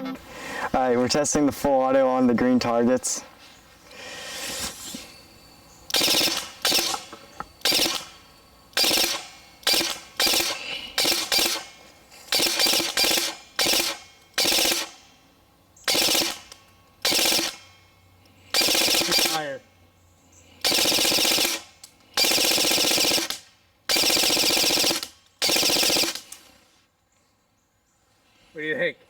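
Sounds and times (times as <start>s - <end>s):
airsoft rifle firing bursts: 5.9s - 8.2s, 8.8s - 15.1s, 15.9s - 17.8s, 18.5s - 19.6s, 20.6s - 26.3s.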